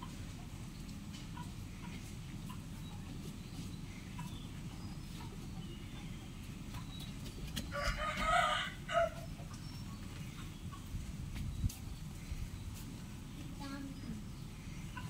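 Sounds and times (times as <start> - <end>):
rooster crowing: 7.7 - 9.3.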